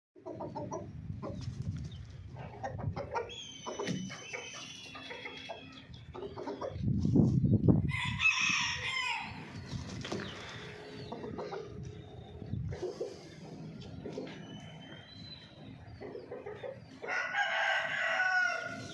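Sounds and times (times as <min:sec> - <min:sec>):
chickens clucking: 0:00.2 - 0:07.9, 0:08.8 - 0:18.9
rooster crowing: 0:07.9 - 0:09.4, 0:17.0 - 0:18.9.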